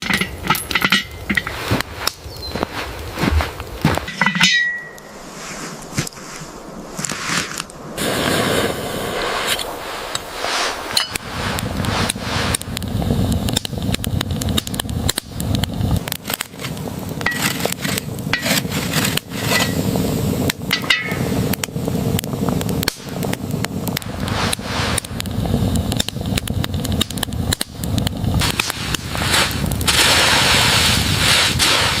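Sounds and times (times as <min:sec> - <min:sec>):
metal cookware scraping and clinking: 0:00.0 - 0:01.6, 0:04.1 - 0:05.1, 0:17.3 - 0:19.8, 0:20.7 - 0:21.3
campfire wood crackling: 0:00.0 - 0:32.0
steady hiss: 0:00.0 - 0:32.0
low rumble: 0:07.7 - 0:32.0.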